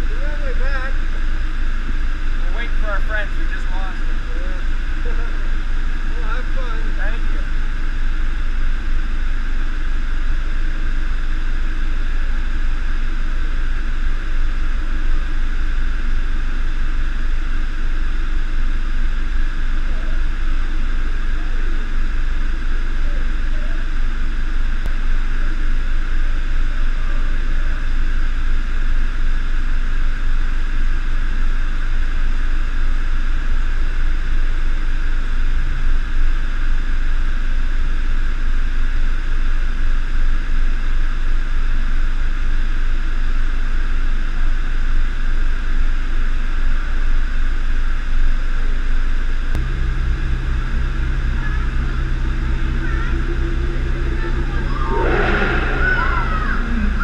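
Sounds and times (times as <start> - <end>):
deep steady hum: 0.0 - 33.1, 49.5 - 57.0
low engine rumble: 49.6 - 57.0.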